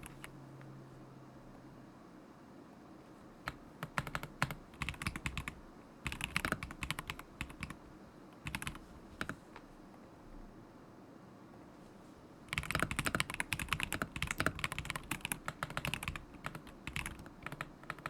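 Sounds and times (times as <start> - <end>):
mechanical keyboard typing: 3.4 - 7.8, 8.4 - 9.4, 12.5 - 18.0.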